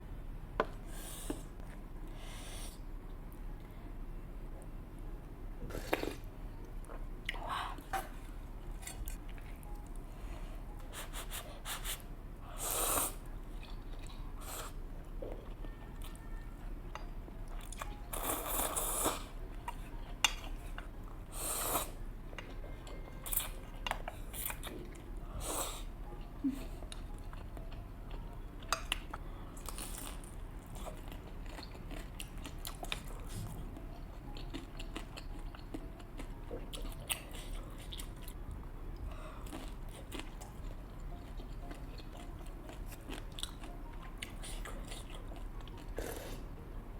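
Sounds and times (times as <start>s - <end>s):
chewing and biting: 34.3s - 38.4s, 39.4s - 46.4s.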